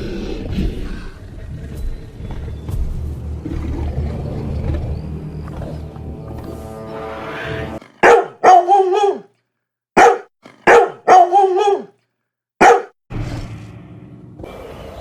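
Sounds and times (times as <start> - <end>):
dog-like barks and yelps: 7.8 - 9.3, 10.0 - 11.9, 12.6 - 12.9.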